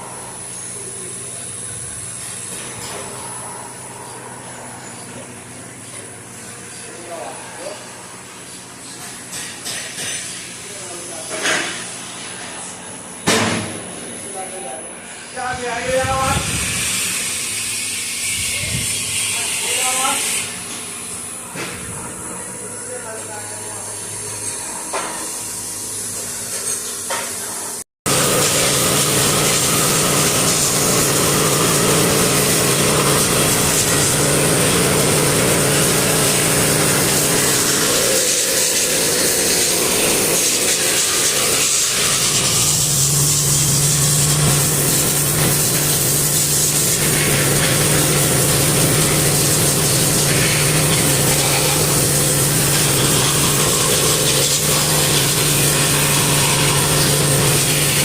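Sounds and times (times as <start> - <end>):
machine tool cutting metal: 28.1 - 58.0.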